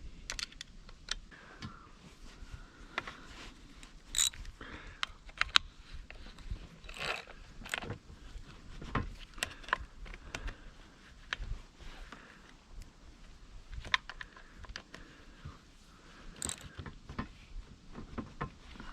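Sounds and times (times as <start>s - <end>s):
chain scraping on chainsaw: 4.1s - 4.4s, 6.8s - 7.8s, 16.4s - 16.7s
metallic clicks: 4.1s - 5.7s, 16.4s - 16.8s.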